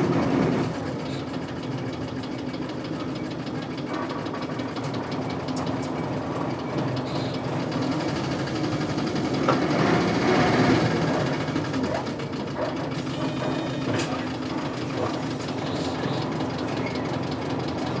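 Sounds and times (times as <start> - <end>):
diesel bus engine idling roughly: 0.0 - 18.0.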